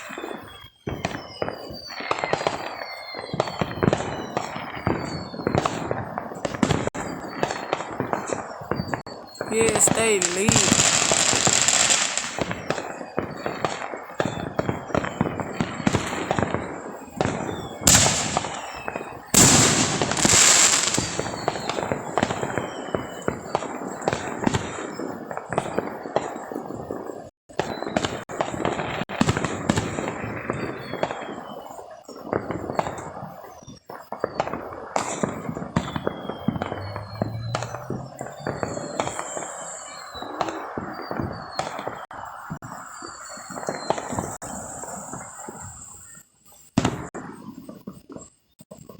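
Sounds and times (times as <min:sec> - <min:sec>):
firecrackers cracking and popping: 0:00.0 - 0:26.9, 0:27.6 - 0:45.6
loud firework bangs: 0:00.0 - 0:45.8, 0:46.8 - 0:47.4.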